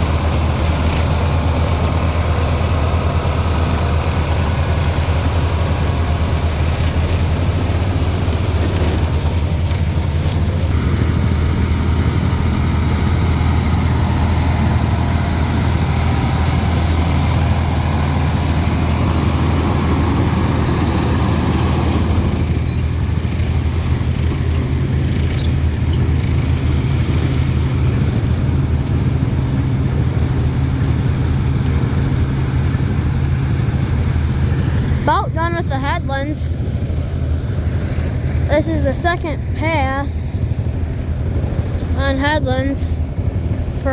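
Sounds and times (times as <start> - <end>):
corn picker clatter: 0.0 - 35.0
tractor engine droning: 0.0 - 43.9.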